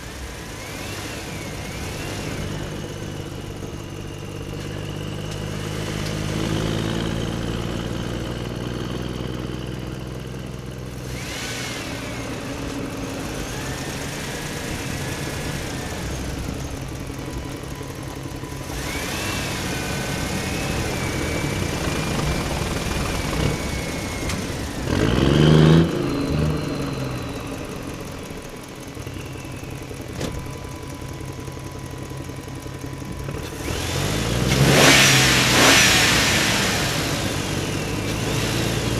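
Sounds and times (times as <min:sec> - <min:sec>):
engine revving loudly: 0:00.0 - 0:03.5, 0:11.0 - 0:17.0, 0:18.6 - 0:27.8, 0:33.3 - 0:38.9
vehicle engine running: 0:00.0 - 0:38.9.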